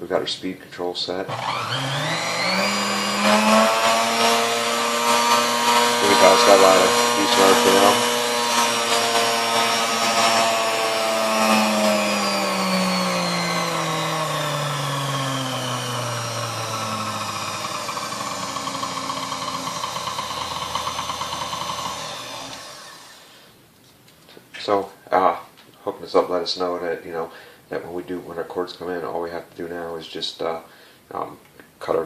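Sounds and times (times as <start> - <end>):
stand mixer motor whining: 1.3 - 23.3.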